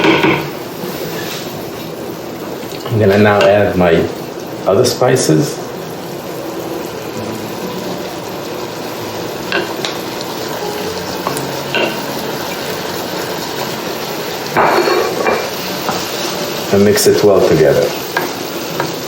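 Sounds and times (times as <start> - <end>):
meat sizzling in a pan: 0.0 - 19.0
utensil scraping a pan: 14.5 - 19.0.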